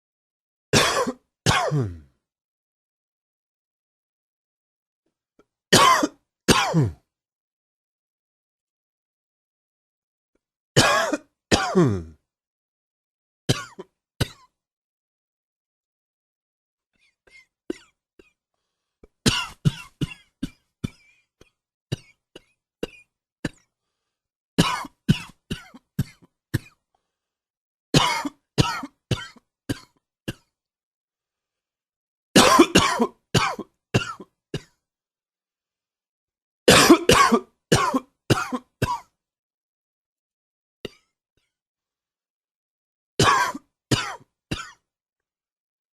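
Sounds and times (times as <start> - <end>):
man coughing: 0.8 - 2.1, 5.7 - 7.0, 10.8 - 12.2, 24.6 - 26.8, 28.0 - 29.9, 32.4 - 34.7, 36.7 - 39.0, 43.2 - 44.8
throat clearing: 0.8 - 2.2, 5.8 - 7.1, 10.8 - 12.2.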